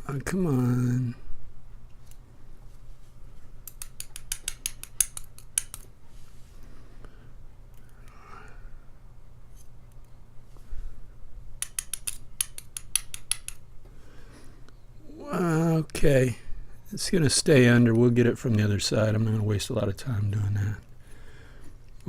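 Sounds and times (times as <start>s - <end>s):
padlock parts clicking: 3.6s - 5.9s, 11.6s - 13.6s.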